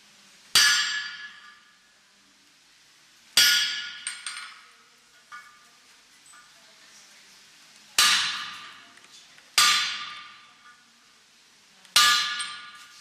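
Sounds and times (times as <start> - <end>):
hammer clanging on anvil: 3.4 - 4.7, 8.0 - 8.8, 9.6 - 10.8, 12.0 - 12.9.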